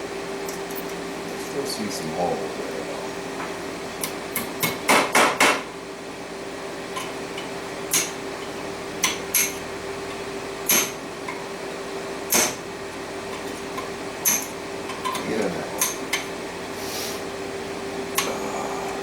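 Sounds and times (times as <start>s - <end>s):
hammer tapping metal punch: 4.4s - 5.7s, 10.6s - 11.0s.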